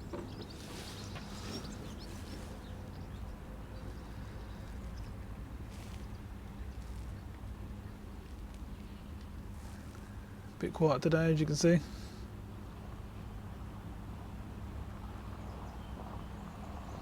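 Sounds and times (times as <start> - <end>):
outboard motor running: 0.0 - 5.2.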